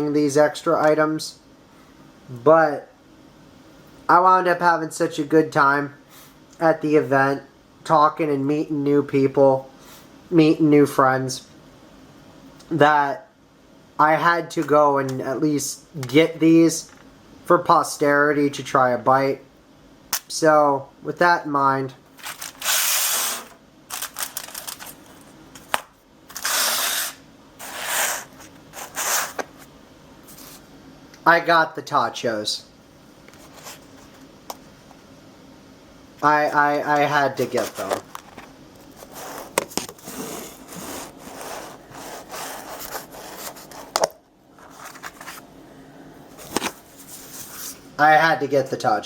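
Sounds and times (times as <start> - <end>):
packaging rustling and crinkling: 22.1 - 23.1, 23.9 - 26.6, 37.4 - 43.9
food container rubbing: 26.3 - 29.5, 37.5 - 44.0.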